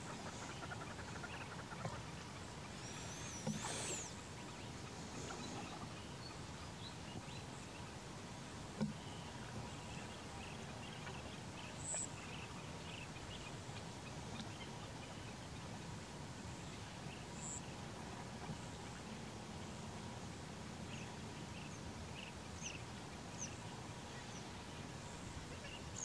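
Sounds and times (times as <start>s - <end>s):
birds chirping: 0.0s - 6.4s
outdoor background noise: 0.0s - 26.0s.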